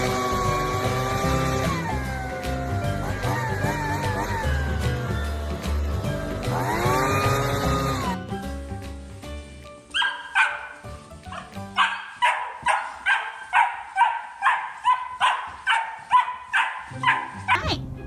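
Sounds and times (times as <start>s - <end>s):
background music: 0.0s - 18.0s
dog barking: 9.9s - 17.8s.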